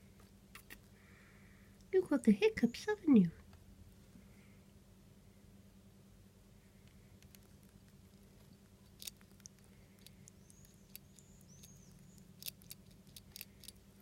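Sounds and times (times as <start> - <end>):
rat hiccup clicks: 0.5 - 0.9.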